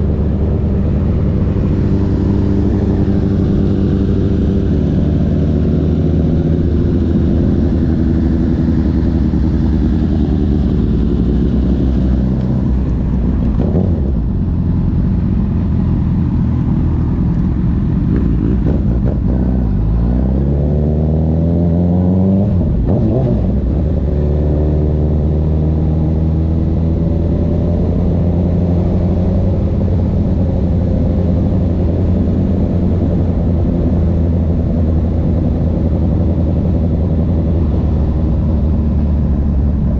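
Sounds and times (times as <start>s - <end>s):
motorcycle engine revving: 18.0s - 39.9s.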